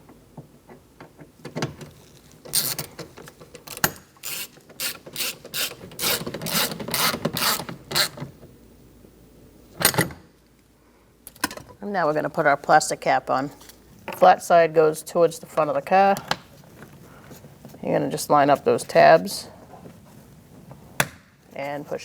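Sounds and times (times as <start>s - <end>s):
socket ratchet clicking: 3.7s - 8.2s.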